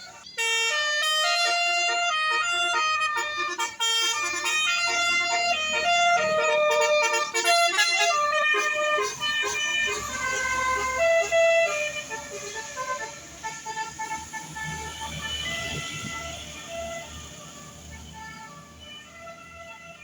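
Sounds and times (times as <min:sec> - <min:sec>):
low vehicle rumble: 0:00.0 - 0:20.0
musical bus horn toots: 0:00.0 - 0:20.0.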